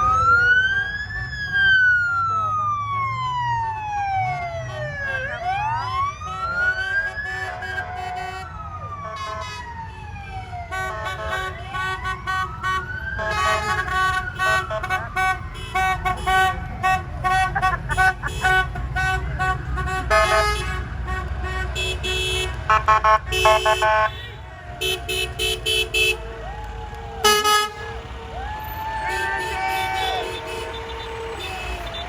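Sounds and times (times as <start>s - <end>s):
emergency siren wailing: 0.0s - 32.0s
horn blasts: 10.6s - 32.0s
low engine rumble: 13.0s - 32.0s.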